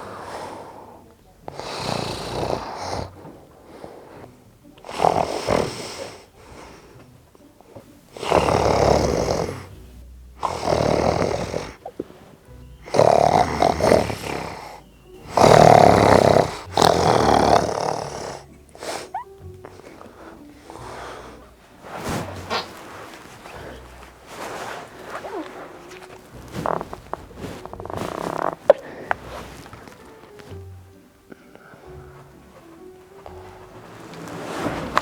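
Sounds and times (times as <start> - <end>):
person snoring loudly: 0.0 - 3.3, 4.8 - 6.3, 8.1 - 9.8, 10.4 - 11.8, 12.8 - 20.0.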